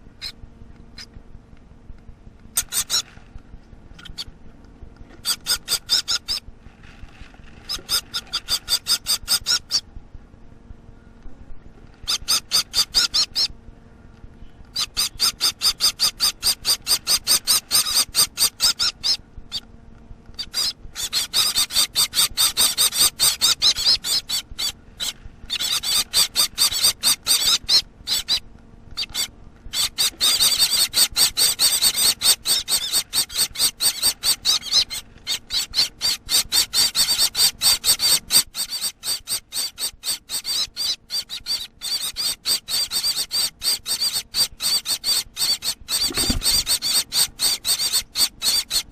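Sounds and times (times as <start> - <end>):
finch nestlings begging chatter: 2.6 - 3.1, 5.2 - 6.4, 7.7 - 9.8, 12.0 - 13.5, 14.7 - 19.6, 20.4 - 48.9.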